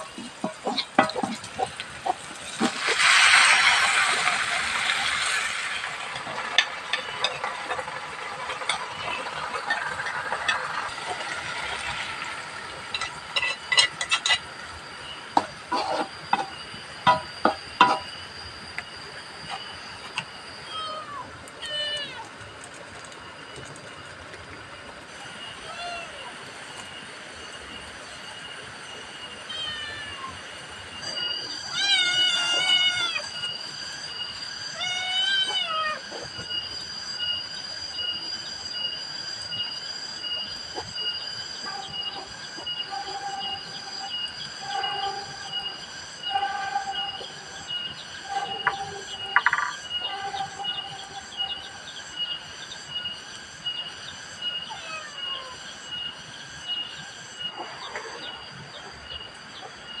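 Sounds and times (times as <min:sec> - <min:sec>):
drawn-out falling animal calls: 0:00.0 - 0:16.7, 0:19.7 - 0:38.1, 0:40.2 - 0:53.2, 0:53.8 - 0:56.0
steady high insect whine: 0:00.0 - 1:00.0
regular chirp: 0:25.1 - 1:00.0.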